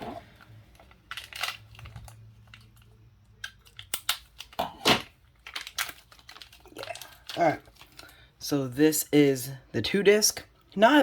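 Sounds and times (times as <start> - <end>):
plastic bag tearing and crinkling: 0.8 - 2.6, 3.5 - 8.1.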